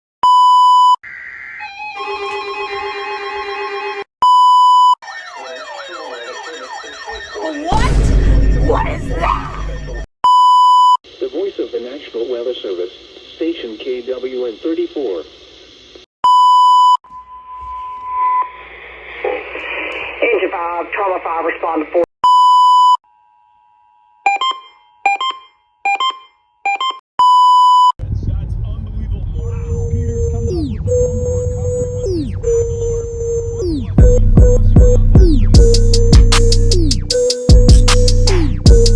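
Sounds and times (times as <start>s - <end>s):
loud electronic beep: 4.2s - 11.0s, 29.2s - 38.9s
short electronic tune: 4.3s - 10.0s, 29.3s - 38.9s
warbling siren tones: 4.8s - 10.1s, 29.3s - 36.1s
faint two-tone signal: 16.2s - 18.6s, 29.3s - 34.5s
clusters of quick beeps: 29.3s - 34.6s.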